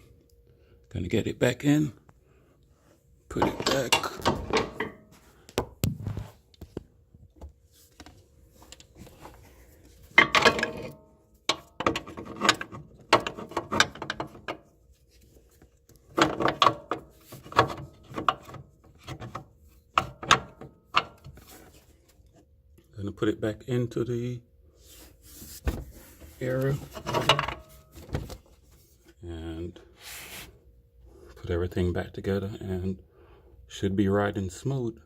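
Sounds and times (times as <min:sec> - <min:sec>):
metal parts and tools clunking: 0:03.3 - 0:05.2, 0:08.6 - 0:14.7, 0:16.1 - 0:21.8, 0:25.6 - 0:28.6.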